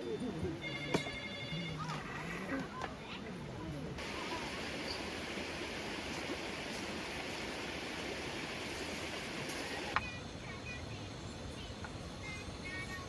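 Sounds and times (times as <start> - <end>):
steady rushing noise: 4.0 - 10.0.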